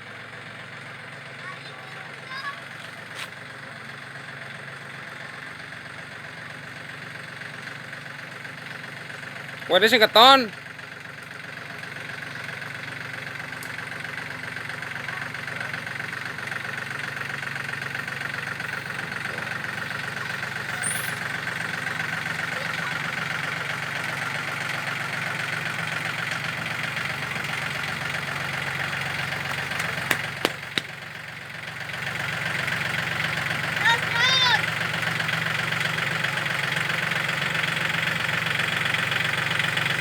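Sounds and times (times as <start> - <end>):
tractor diesel engine droning: 0.0 - 40.0.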